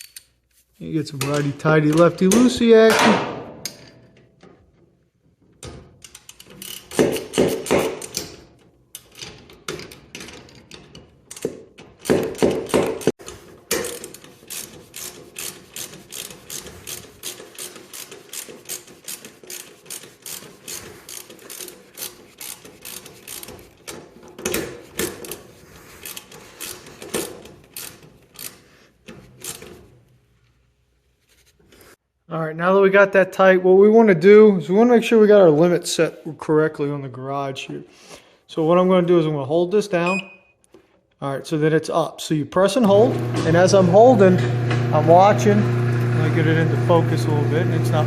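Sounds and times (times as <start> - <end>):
socket ratchet clicking: 6.0 - 9.2, 13.7 - 24.0, 26.0 - 28.6.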